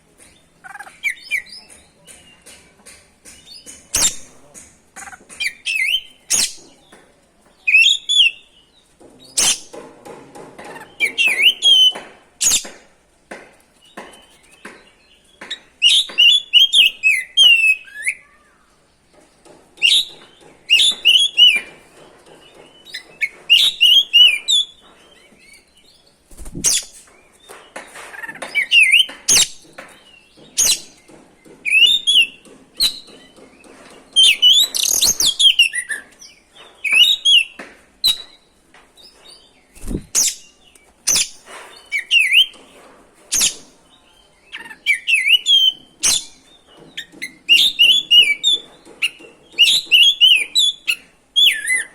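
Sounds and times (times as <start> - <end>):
sharp bird clicks: 3.3 - 6.8
bird whistled song: 5.4 - 6.6, 7.6 - 8.5, 11.0 - 12.7, 15.8 - 18.2, 19.8 - 20.1, 20.7 - 21.7, 22.8 - 24.8, 28.5 - 29.6, 30.3 - 31.0, 31.6 - 33.1, 34.2 - 38.5, 39.4 - 42.6, 44.5 - 51.9.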